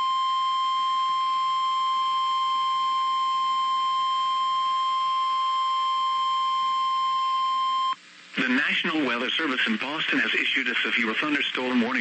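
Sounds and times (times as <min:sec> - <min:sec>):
steady warning alarm beep: 0:00.0 - 0:08.0.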